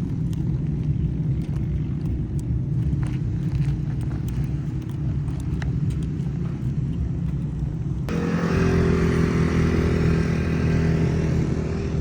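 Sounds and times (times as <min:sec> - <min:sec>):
quad bike engine running: 0:02.8 - 0:12.0.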